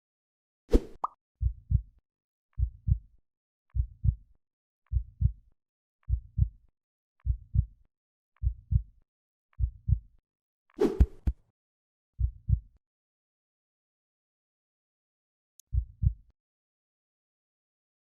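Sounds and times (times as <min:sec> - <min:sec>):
heartbeat thumps: 0:01.4 - 0:01.8, 0:02.6 - 0:03.0, 0:03.8 - 0:04.2, 0:04.9 - 0:05.4, 0:06.1 - 0:06.6, 0:07.2 - 0:07.7, 0:08.4 - 0:08.8, 0:09.6 - 0:10.0, 0:12.2 - 0:12.6, 0:15.7 - 0:16.2.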